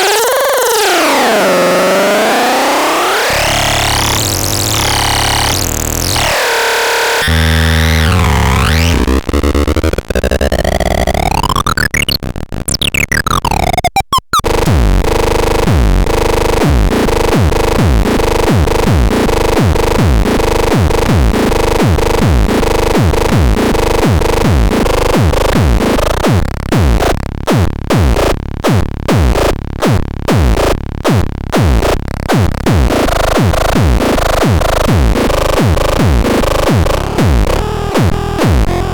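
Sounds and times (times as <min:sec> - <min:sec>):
repeating falling pitch drops: 0:08.0 - 0:14.8.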